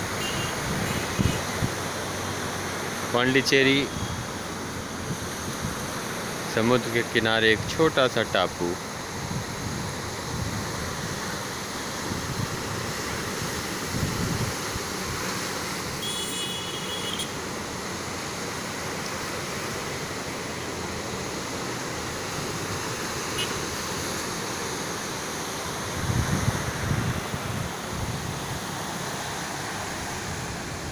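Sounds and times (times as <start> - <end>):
surf washing on shore: 0.0 - 30.9
wind buffeting microphone: 25.9 - 28.4.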